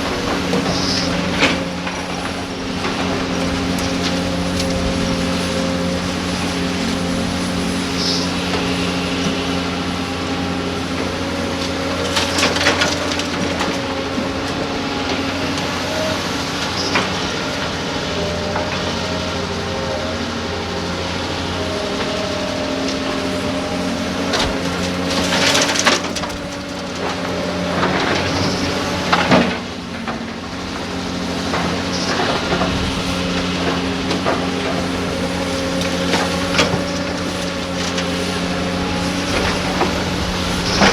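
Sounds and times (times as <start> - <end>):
excavator diesel engines running: 0.0 - 40.9
rock scraping and clattering: 24.2 - 29.6.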